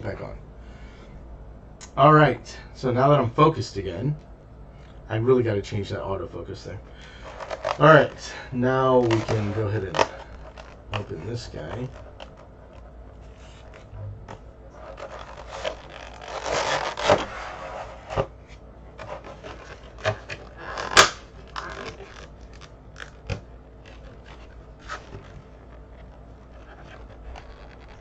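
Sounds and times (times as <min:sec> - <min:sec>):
card and plastic rustling: 0:07.0 - 0:28.0.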